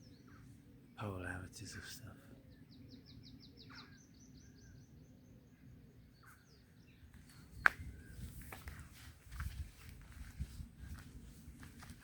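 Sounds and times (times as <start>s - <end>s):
small songbird singing: 0.0s - 8.6s.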